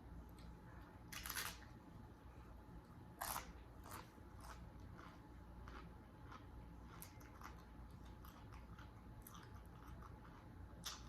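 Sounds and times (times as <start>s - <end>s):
chips crunching when chewed: 3.2s - 11.0s.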